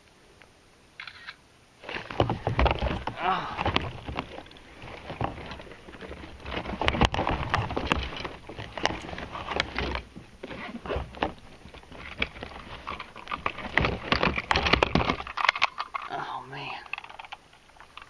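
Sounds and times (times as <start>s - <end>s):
knocks and taps in a kayak: 1.9s - 15.4s.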